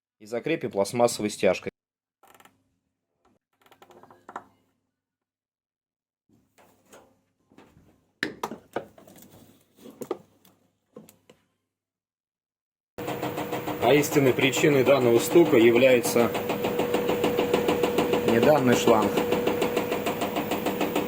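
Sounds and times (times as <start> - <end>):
plastic parts clicking and knocking: 3.2 - 4.6, 13.0 - 21.0.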